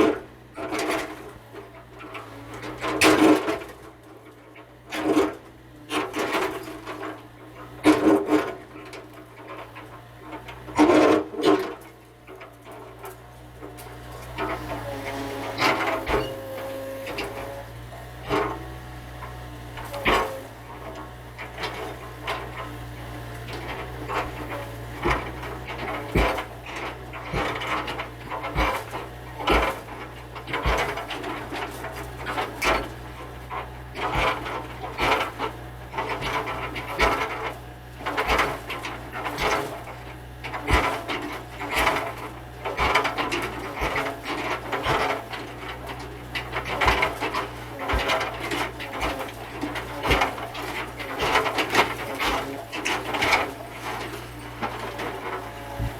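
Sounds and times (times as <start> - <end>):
excavator engine running: 0.0 - 55.9
wood cracking and scraping: 6.0 - 55.9.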